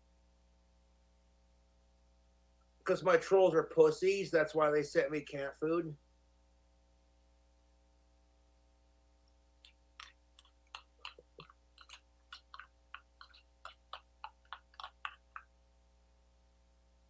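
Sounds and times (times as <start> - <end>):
person chewing wetly: 9.6 - 15.6.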